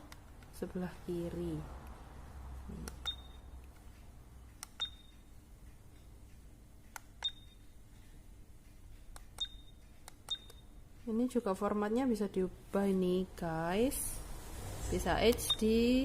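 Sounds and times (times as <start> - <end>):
short high beeps: 3.0 - 3.6, 4.8 - 5.3, 7.2 - 7.6, 9.4 - 10.8.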